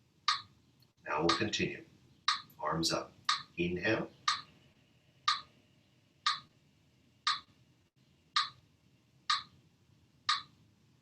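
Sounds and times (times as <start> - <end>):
steady ticking: 0.3 - 0.5, 1.2 - 1.6, 2.3 - 2.6, 3.2 - 3.6, 4.2 - 4.5, 5.3 - 5.5, 6.2 - 6.5, 7.3 - 7.5, 8.3 - 8.6, 9.3 - 9.5, 10.3 - 10.5.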